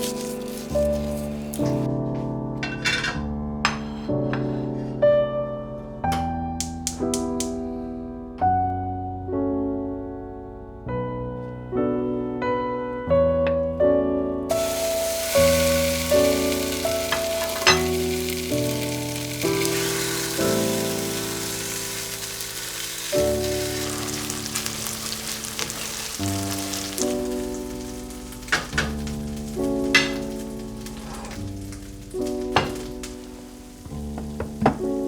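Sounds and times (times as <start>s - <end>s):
soft piano music: 0.0s - 35.0s
food sizzling in hot oil: 14.5s - 35.0s.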